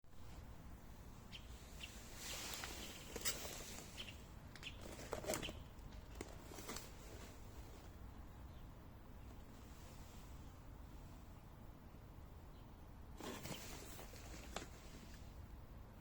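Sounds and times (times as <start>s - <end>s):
packaging rustling: 4.8s - 7.5s, 13.2s - 14.9s.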